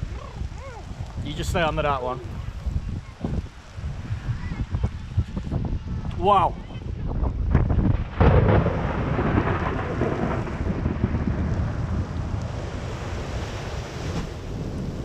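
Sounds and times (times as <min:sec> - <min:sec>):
heavy rain: 0:00.0 - 0:15.0
thunderclap rumbling: 0:06.9 - 0:15.0.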